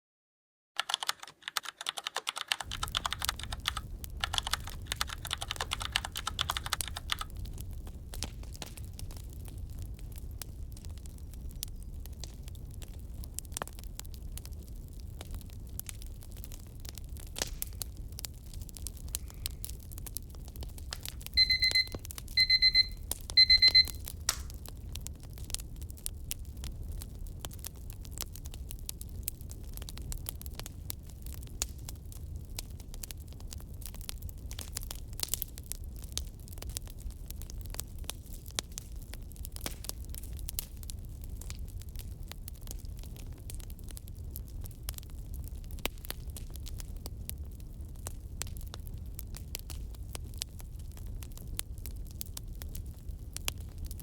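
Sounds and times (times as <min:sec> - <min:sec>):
rapid sharp clicks: 0:00.8 - 0:07.3
fire rumbling: 0:02.6 - 0:54.0
timer alarm beeping: 0:21.4 - 0:24.0.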